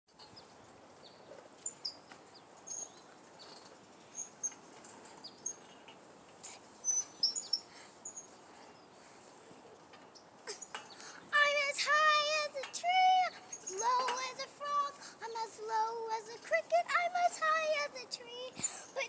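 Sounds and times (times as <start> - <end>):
birds chirping: 0.2 - 9.3, 9.9 - 15.1.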